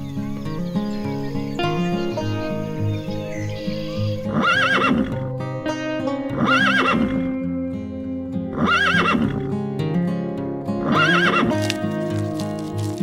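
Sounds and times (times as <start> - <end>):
background music: 0.0 - 13.0
horse whinnying: 4.3 - 5.3, 6.3 - 7.4, 8.5 - 9.5, 10.8 - 11.7.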